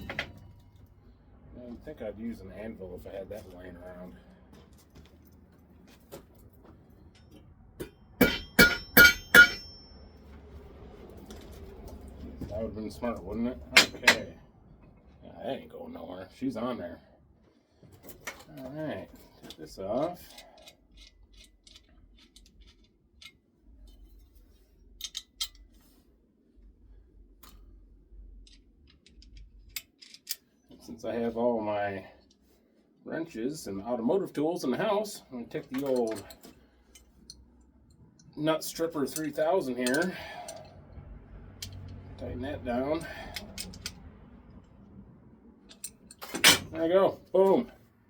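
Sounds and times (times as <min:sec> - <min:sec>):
loud metal clacks: 0:07.8 - 0:09.9
hammer striking metal: 0:07.8 - 0:10.1
small metallic clicks and clinks: 0:19.2 - 0:24.3, 0:25.0 - 0:25.7, 0:28.4 - 0:30.6, 0:35.6 - 0:38.3, 0:39.1 - 0:40.7, 0:41.6 - 0:42.0, 0:43.0 - 0:44.0, 0:45.6 - 0:46.7.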